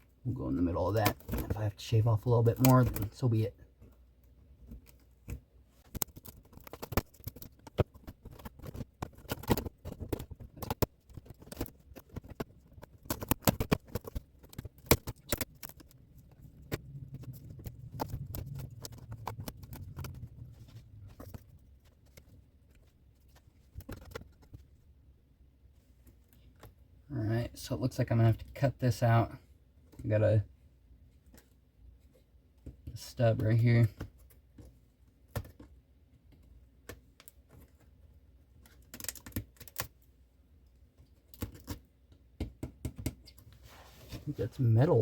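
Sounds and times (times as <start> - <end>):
light clicks taps and scrapes: 0.8 - 24.8
low hum: 15.4 - 23.1.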